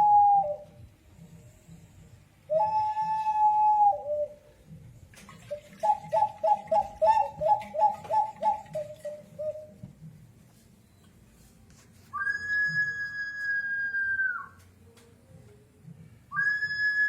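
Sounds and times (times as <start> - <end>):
ceramic whistling pot whistle: 0.0 - 0.8, 2.5 - 4.5, 5.8 - 9.8, 12.1 - 14.6, 16.3 - 17.0
bird-like warbling call: 5.5 - 9.7.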